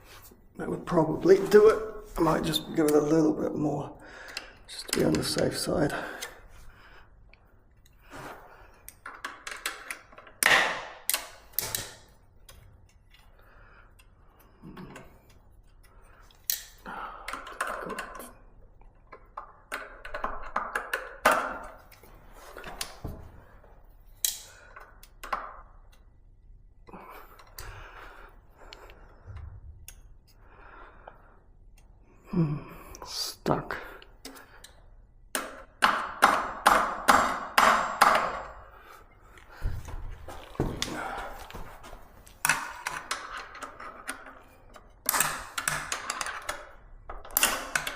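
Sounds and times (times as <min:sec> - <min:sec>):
tool handling and scraping: 0:00.0 - 0:03.3, 0:38.2 - 0:47.9
pliers clicking and tapping metal: 0:08.9 - 0:13.2, 0:16.3 - 0:18.3, 0:24.1 - 0:26.1, 0:42.4 - 0:47.9.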